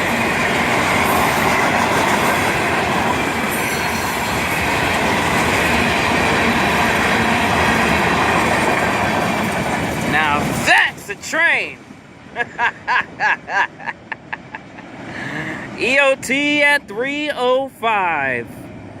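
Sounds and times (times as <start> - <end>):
steel wheels on rails: 0.0 - 11.9.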